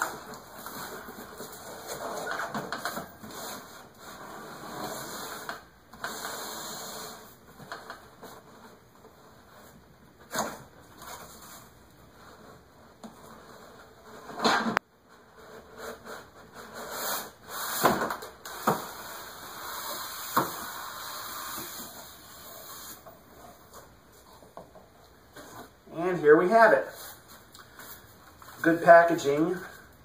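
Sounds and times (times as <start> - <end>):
cardboard and styrofoam rustling: 0.0 - 7.2.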